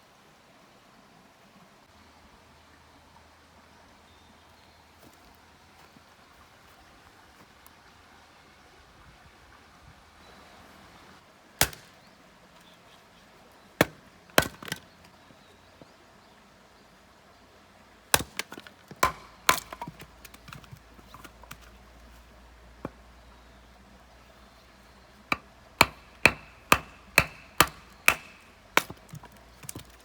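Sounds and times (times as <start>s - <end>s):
axe chopping wood: 11.6s - 12.0s, 13.8s - 14.9s, 18.1s - 21.7s, 25.3s - 30.0s
split wood pieces clattering: 18.2s - 21.8s, 25.3s - 30.0s.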